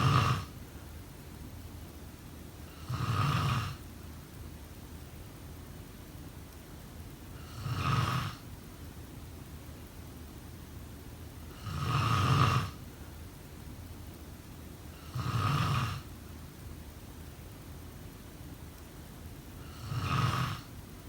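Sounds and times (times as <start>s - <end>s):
person snoring: 0.0s - 0.5s, 11.6s - 12.8s, 19.7s - 20.7s.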